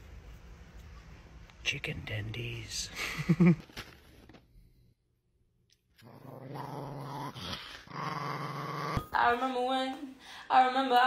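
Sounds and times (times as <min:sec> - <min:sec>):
dog growling: 0:06.0 - 0:09.1.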